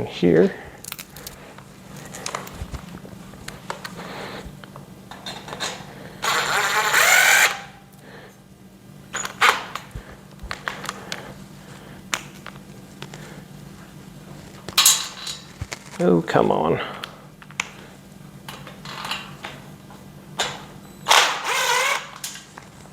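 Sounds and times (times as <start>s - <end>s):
power drill driving screw: 6.2s - 7.7s, 21.1s - 22.3s.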